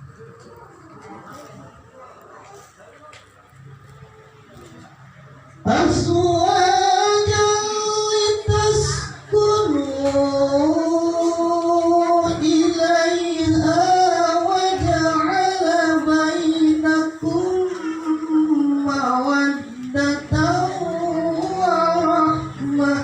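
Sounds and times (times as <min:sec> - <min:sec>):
person chanting recitation: 0:05.6 - 0:23.0.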